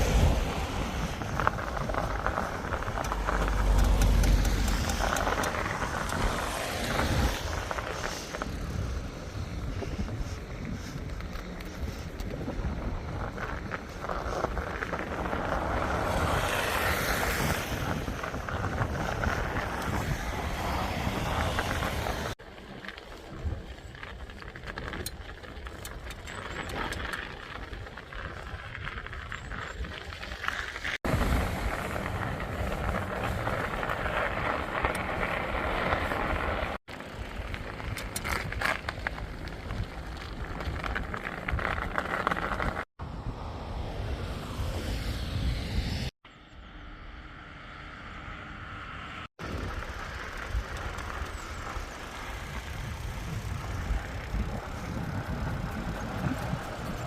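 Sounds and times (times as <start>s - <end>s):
wind buffeting microphone: 0.0s - 22.4s, 23.2s - 46.1s, 49.4s - 57.0s
low rumble of rolling: 17.4s - 42.9s.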